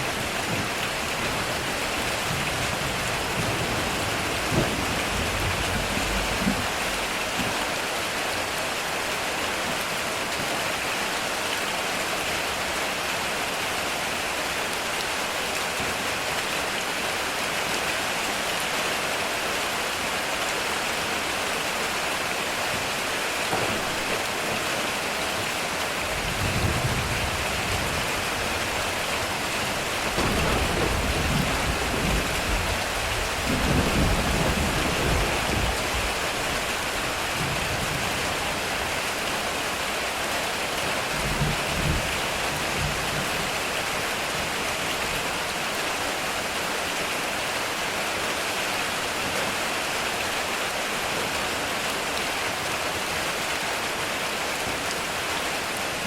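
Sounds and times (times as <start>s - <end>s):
heavy rain falling: 0.0s - 56.0s
rolling thunder: 0.2s - 7.7s, 26.1s - 38.5s.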